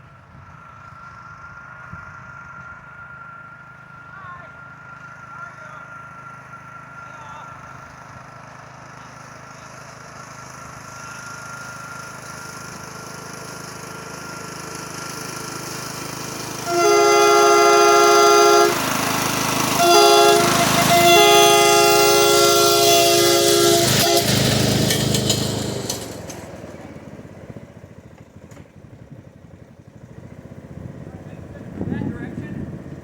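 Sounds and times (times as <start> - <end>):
train horn blowing chord: 16.4 - 26.3.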